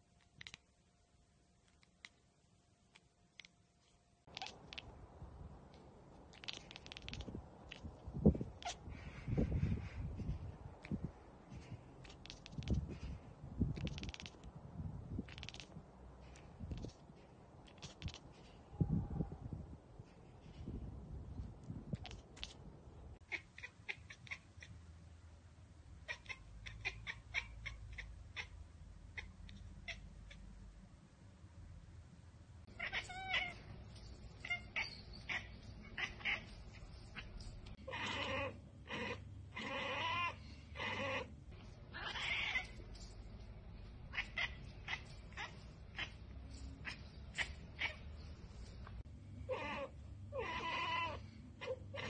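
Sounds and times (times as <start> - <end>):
cat chattering: 0.3 - 0.7, 4.3 - 5.0, 6.2 - 14.6, 15.2 - 17.0, 17.6 - 18.7, 21.9 - 24.8, 26.0 - 30.6, 32.7 - 41.3, 41.9 - 43.2, 43.8 - 52.0.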